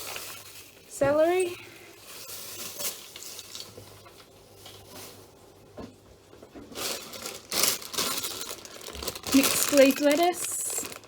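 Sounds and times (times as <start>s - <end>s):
plastic packaging crinkling: 0.0s - 1.0s, 1.9s - 5.4s, 6.6s - 11.0s.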